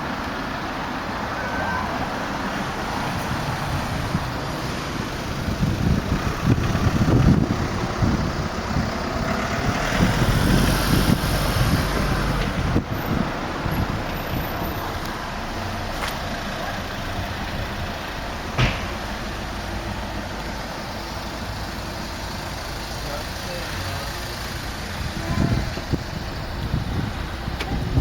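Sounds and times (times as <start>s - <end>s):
vehicles passing: 0.0s - 28.0s
short knock: 18.6s - 19.0s.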